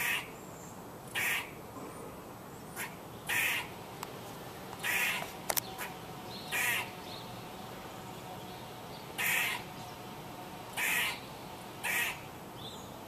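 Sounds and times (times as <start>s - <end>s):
squirrel harsh calls: 0.0s - 0.4s, 1.1s - 1.6s, 2.7s - 3.8s, 4.8s - 7.3s, 9.0s - 9.9s, 10.7s - 12.9s.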